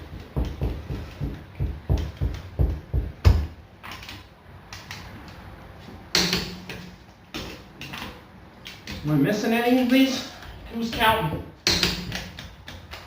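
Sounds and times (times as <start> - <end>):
tools knocking on lug nuts: 0.0 - 3.6.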